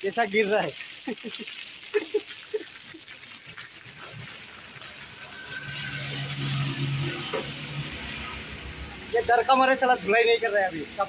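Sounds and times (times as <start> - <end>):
water pouring off a tin roof: 0.0 - 11.0.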